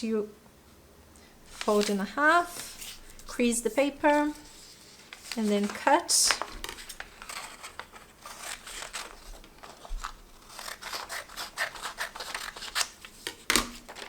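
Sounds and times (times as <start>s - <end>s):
scissors cutting paper: 5.6s - 14.0s.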